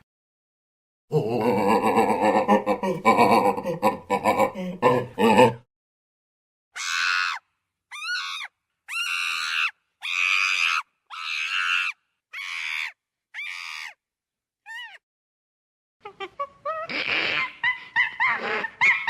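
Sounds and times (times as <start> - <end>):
chimpanzee screaming: 6.8 - 14.0, 14.7 - 15.0.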